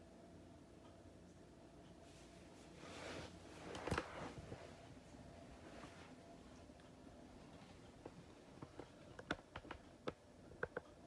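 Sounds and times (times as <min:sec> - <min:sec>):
faint steady hum: 0:00.0 - 0:11.0
faint rustling: 0:02.0 - 0:09.9.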